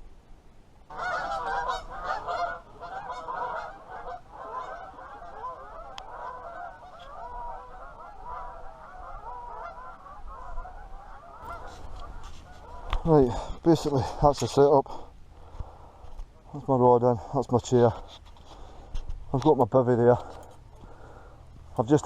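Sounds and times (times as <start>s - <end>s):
geese honking: 0.9s - 14.6s.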